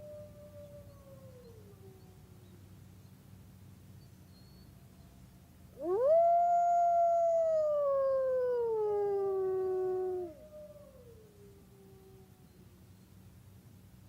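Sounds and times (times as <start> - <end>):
fainter lower howl: 0.0 - 2.6, 5.8 - 12.7
wolf howling: 5.8 - 12.2.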